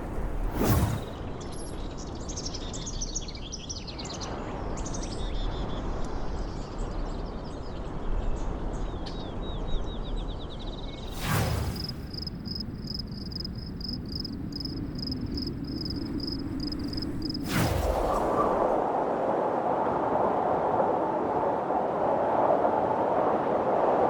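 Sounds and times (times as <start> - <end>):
brief whoosh: 0.0 - 1.4, 11.1 - 12.6, 17.4 - 18.8
low wind-like rumble: 0.0 - 24.0.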